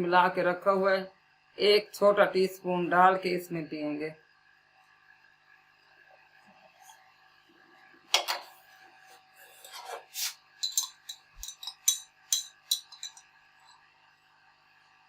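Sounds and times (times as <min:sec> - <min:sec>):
spoon scraping cup: 0:09.4 - 0:13.8
teaspoon knocking on cup: 0:10.6 - 0:13.2
spoon clinking against cup: 0:10.6 - 0:13.3.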